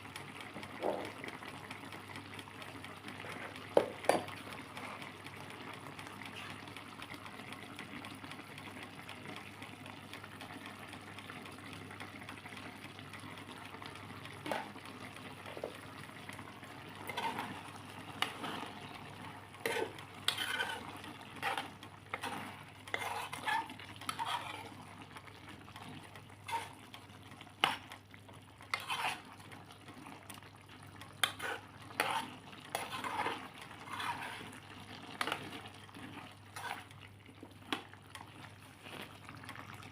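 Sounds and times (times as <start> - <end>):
utensil scraping a pan: 14.4 - 14.8, 17.0 - 24.8, 26.4 - 26.9, 27.6 - 27.9, 28.6 - 29.4, 31.2 - 37.0.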